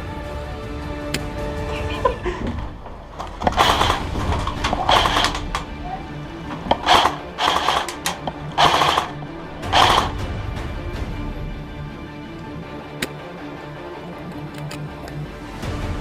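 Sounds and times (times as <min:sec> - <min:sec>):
background music: 0:00.0 - 0:16.0
airsoft rifle bursts: 0:03.0 - 0:10.2.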